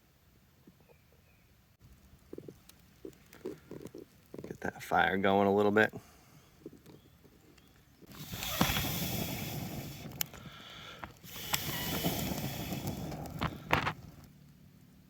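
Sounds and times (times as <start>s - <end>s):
fire snapping and cracking: 1.9s - 5.0s, 6.8s - 14.6s.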